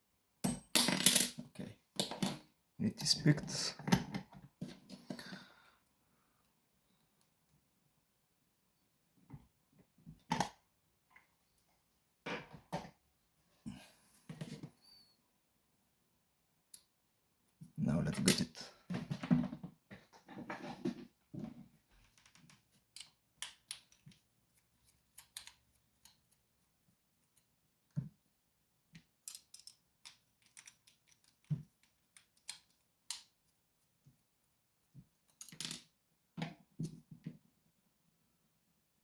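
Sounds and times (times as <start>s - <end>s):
small metal clicks and taps: 29.0s - 33.3s.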